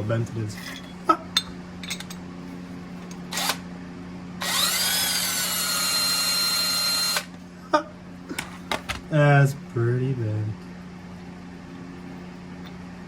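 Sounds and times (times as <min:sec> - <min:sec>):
power drill motor whining: 0:03.3 - 0:03.6, 0:04.4 - 0:07.4.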